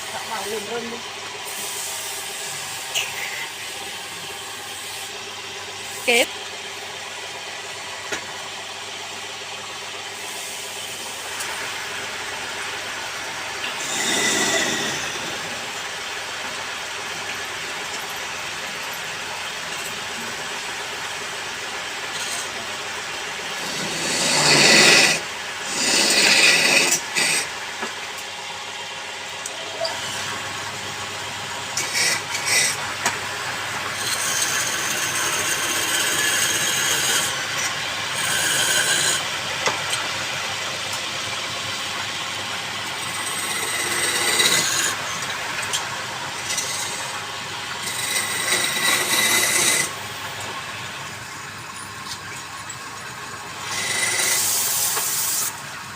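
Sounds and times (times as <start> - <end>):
tool scraping spinning wood: 0.0 - 6.3, 10.0 - 21.2, 21.8 - 28.4, 29.5 - 31.0, 31.6 - 40.0, 42.5 - 55.7
wood lathe humming: 0.0 - 17.0, 22.0 - 27.6, 30.0 - 39.8, 42.5 - 51.4, 53.3 - 55.7.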